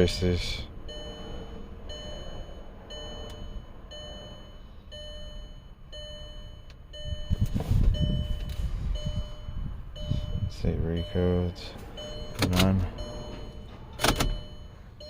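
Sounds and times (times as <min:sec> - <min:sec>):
electronic warning chime beeping: 0:00.0 - 0:15.0
low rumbling noise: 0:00.0 - 0:15.0
low hum: 0:00.6 - 0:15.0.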